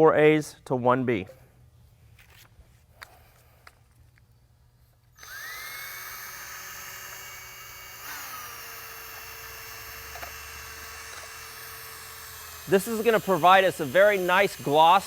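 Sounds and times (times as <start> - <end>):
electric drill whining: 5.1 - 15.0.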